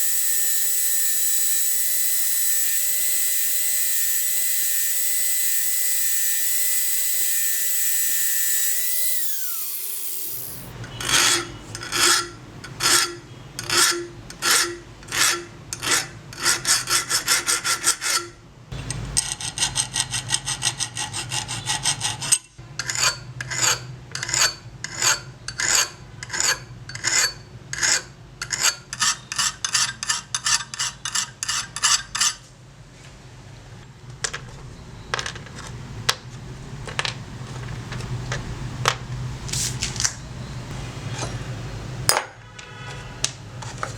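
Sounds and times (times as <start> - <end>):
small power tool whining: 0.0 - 10.7
filing on steel pruners: 0.0 - 12.1.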